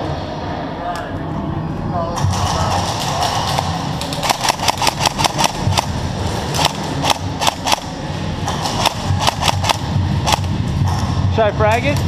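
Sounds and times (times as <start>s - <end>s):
steady low rumble: 0.0s - 12.0s
airsoft guns firing: 2.2s - 10.6s.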